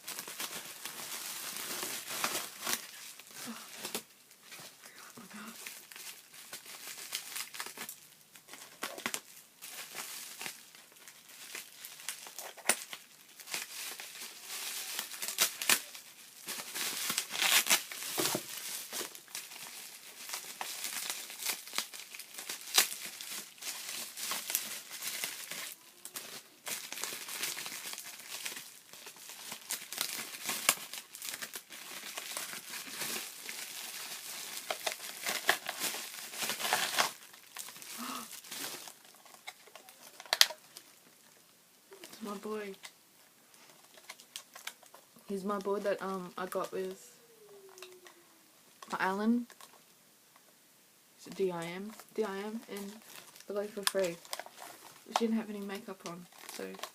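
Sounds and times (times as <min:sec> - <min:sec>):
tearing and rustling: 0:00.0 - 0:04.7, 0:05.5 - 0:41.0, 0:52.8 - 0:55.1
packing wrap crinkling: 0:00.0 - 0:48.2, 0:51.3 - 0:56.9.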